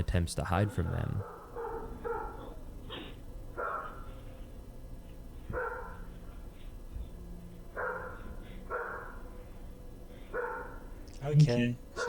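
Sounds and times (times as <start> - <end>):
dog barking: 0.5 - 4.4, 5.4 - 6.5, 7.7 - 9.5, 10.3 - 11.0.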